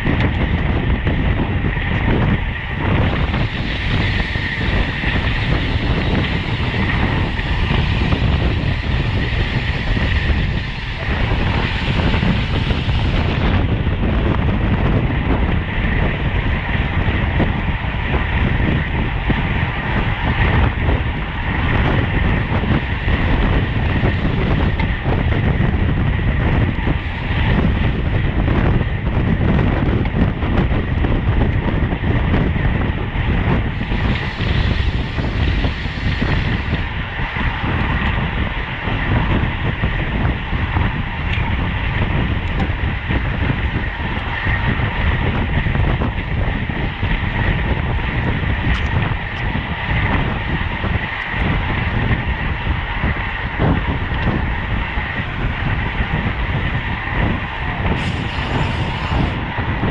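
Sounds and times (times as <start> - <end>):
wind buffeting microphone: 0.0 - 59.9.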